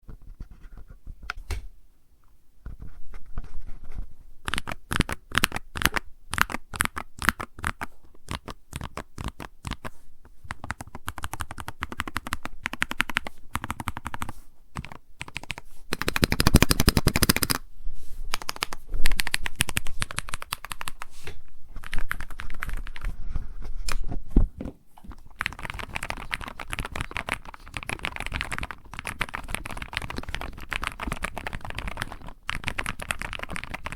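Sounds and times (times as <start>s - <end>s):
keyboard keystroke clacks: 10.5s - 17.6s.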